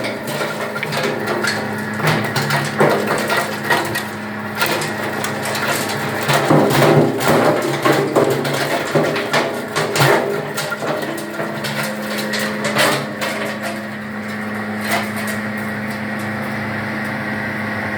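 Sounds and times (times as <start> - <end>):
wood cracking and knocking: 0.0 - 16.0
wood crusher machine humming: 0.0 - 17.9.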